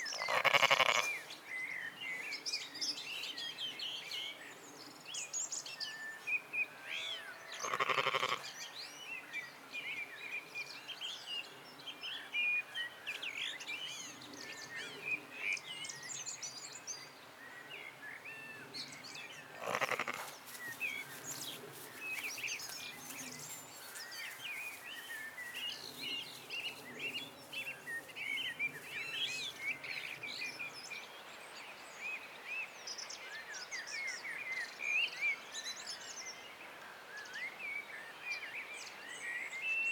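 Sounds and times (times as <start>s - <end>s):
loud bleats: 0.3s - 1.1s, 7.6s - 8.4s, 19.6s - 20.2s.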